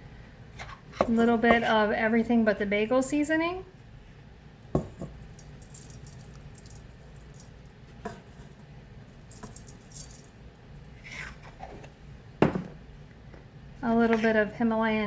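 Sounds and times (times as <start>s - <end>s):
jar set down knock: 4.8s - 5.2s, 12.4s - 12.8s
spice shaker rattling: 5.1s - 7.8s, 9.3s - 10.5s.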